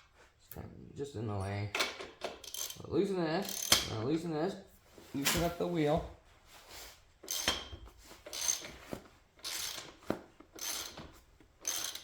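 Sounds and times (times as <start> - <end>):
socket ratchet clicking: 2.2 - 2.8, 3.5 - 3.9, 7.3 - 7.7, 8.3 - 8.7, 9.4 - 9.9, 10.6 - 11.0, 11.6 - 12.0.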